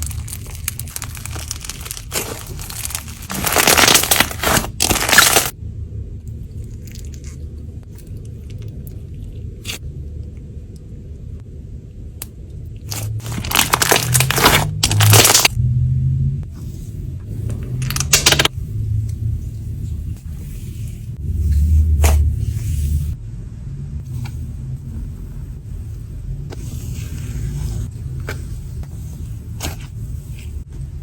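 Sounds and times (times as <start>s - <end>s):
slime squished by hand: 0.0s - 5.5s, 12.9s - 15.5s.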